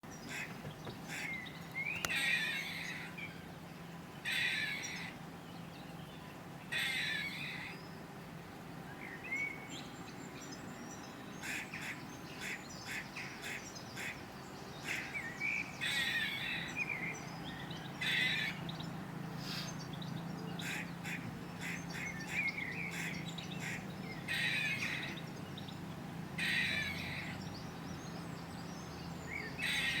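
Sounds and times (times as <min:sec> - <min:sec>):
squirrel barking alarm call: 0:02.0 - 0:03.1, 0:04.2 - 0:05.2, 0:06.7 - 0:07.7, 0:18.0 - 0:18.6, 0:20.6 - 0:25.2, 0:26.4 - 0:27.3, 0:29.6 - 0:30.0.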